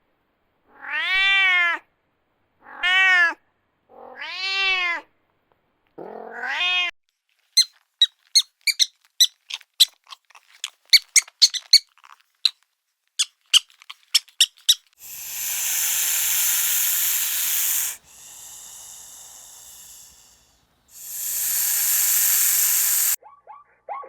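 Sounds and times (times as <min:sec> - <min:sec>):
high squeaks: 0:07.6 - 0:12.6, 0:13.2 - 0:18.0
animal hissing: 0:15.0 - 0:23.2.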